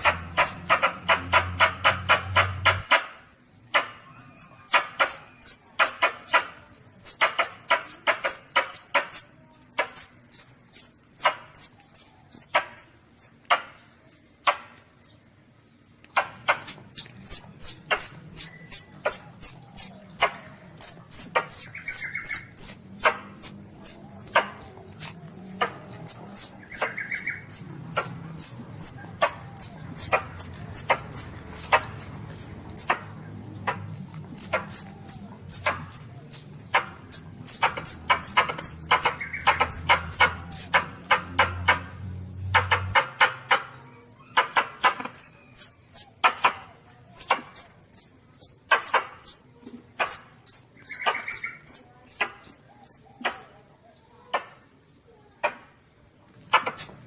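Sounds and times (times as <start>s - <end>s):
civet high squeaks: 0.0s - 1.1s, 4.0s - 13.4s, 16.5s - 40.9s, 44.2s - 53.4s.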